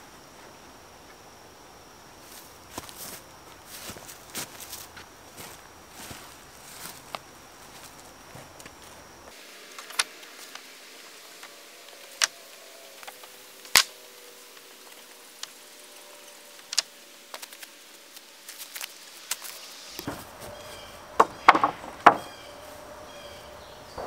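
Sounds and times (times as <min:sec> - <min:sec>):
wooden boards knocking: 0:21.2 - 0:22.3.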